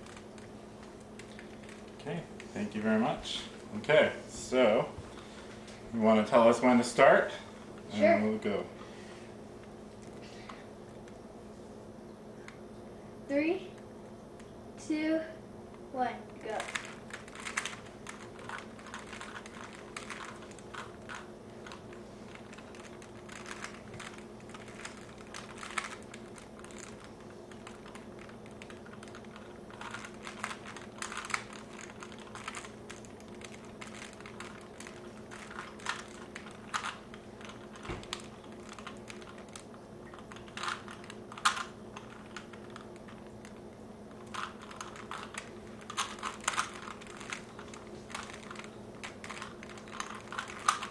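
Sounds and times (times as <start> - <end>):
low steady hum: 0.0 - 50.9
plastic cube clicks and rattles: 16.5 - 50.9.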